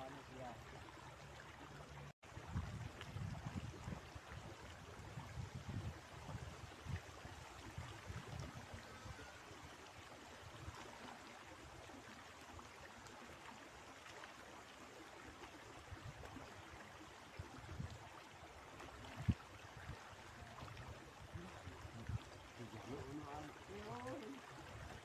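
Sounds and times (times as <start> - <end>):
river water flowing: 0.0 - 25.0
wind buffeting microphone: 2.4 - 9.4, 19.1 - 24.1.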